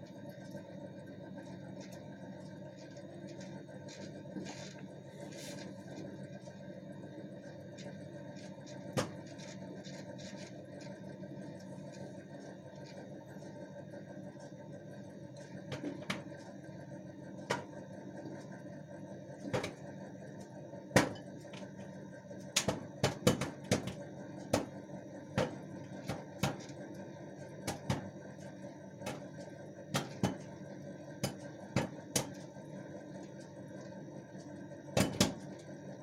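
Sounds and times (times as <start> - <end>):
microwave oven humming: 0.0 - 36.0
popcorn kernels popping: 22.4 - 26.8, 27.6 - 28.2, 29.0 - 30.6, 31.2 - 32.5.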